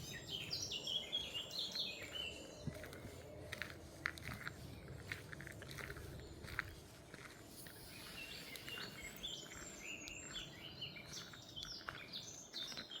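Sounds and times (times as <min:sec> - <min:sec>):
footsteps crunching on a path: 0:01.6 - 0:13.0
small bird chirping: 0:07.5 - 0:13.0.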